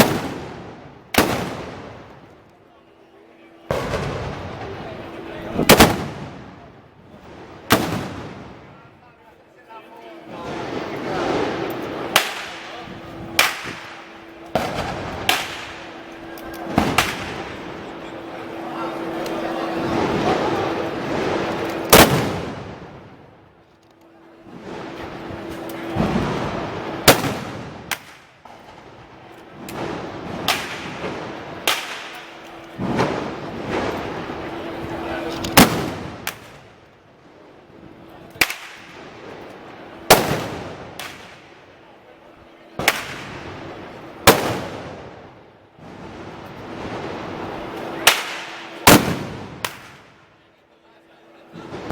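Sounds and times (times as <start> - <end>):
sharp gunpowder bangs: 0.0 - 2.1, 3.7 - 6.5, 7.7 - 8.6, 10.7 - 17.9, 20.4 - 22.8, 25.0 - 28.6, 29.7 - 34.0, 35.5 - 36.7, 38.4 - 39.0, 40.0 - 41.5, 42.8 - 43.5, 44.3 - 45.0, 47.9 - 50.1
festival crowd noise: 0.0 - 51.9.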